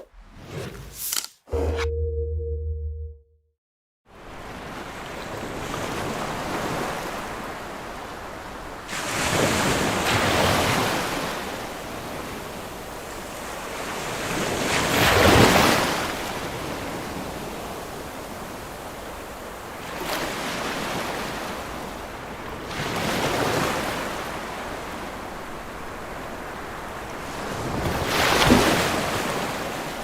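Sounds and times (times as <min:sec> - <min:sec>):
ocean waves breaking: 0:19.7 - 0:30.0.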